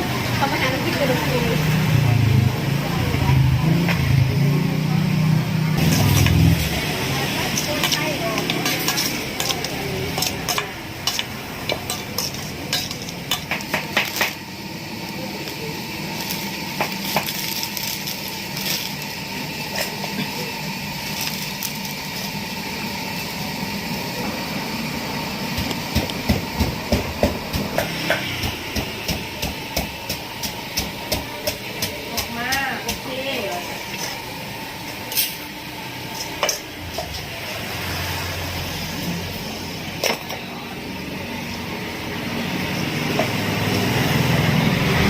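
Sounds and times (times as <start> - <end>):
spoon and utensil clatter: 7.6 - 14.4.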